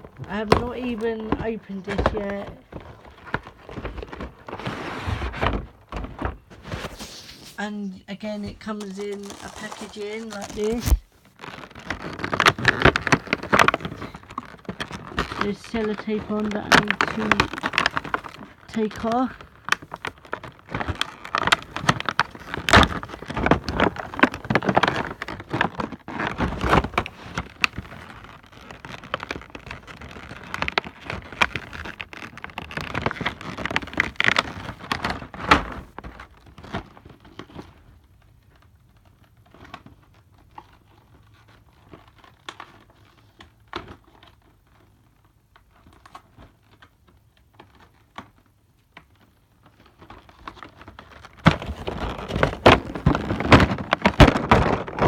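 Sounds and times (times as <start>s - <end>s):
packaging crinkling and rustling: 0.0s - 55.0s
tape peeling off cardboard: 8.6s - 15.4s.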